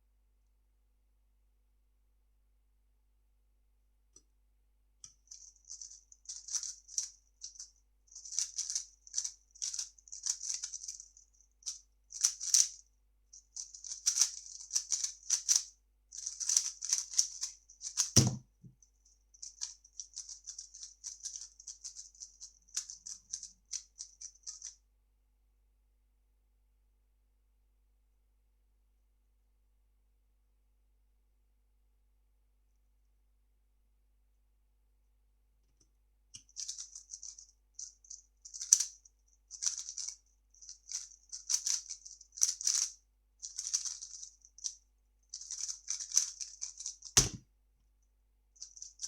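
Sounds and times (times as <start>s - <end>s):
puzzle cube clacking: 8.2s - 11.0s, 12.2s - 12.7s, 13.6s - 18.4s, 40.9s - 42.9s, 45.4s - 47.4s.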